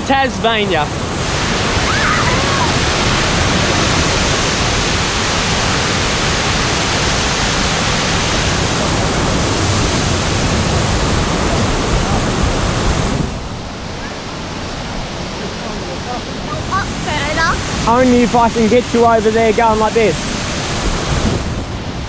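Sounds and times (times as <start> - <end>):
waterfall rushing: 0.6 - 22.0.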